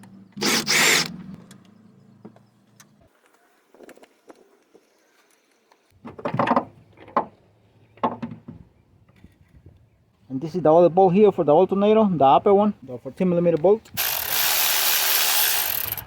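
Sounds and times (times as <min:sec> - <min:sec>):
power wrench running: 0:00.4 - 0:01.2, 0:14.0 - 0:16.0.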